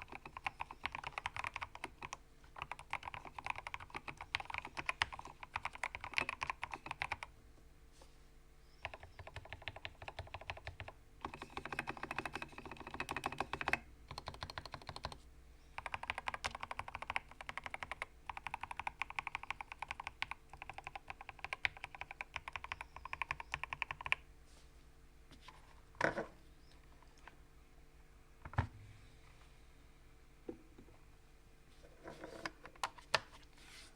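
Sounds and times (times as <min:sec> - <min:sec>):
mechanical keyboard typing: 0:00.0 - 0:07.3, 0:08.8 - 0:15.2, 0:15.8 - 0:24.2.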